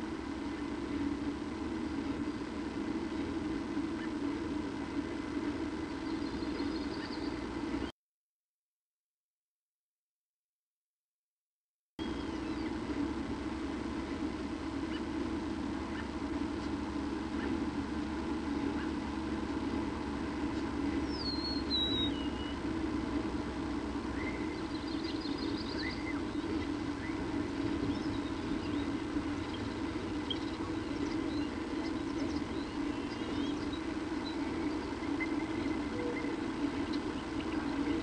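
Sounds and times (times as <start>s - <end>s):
steady low hum: 0.0s - 7.9s, 12.0s - 38.0s
faint bird chirps: 3.0s - 4.3s, 5.7s - 7.9s, 12.0s - 12.8s, 14.8s - 15.2s, 15.8s - 17.7s, 18.5s - 19.1s, 20.8s - 22.7s, 24.1s - 38.0s.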